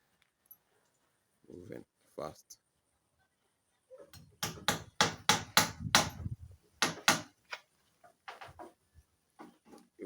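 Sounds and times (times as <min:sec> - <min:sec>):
hammer blows on timber: 0:04.4 - 0:07.3.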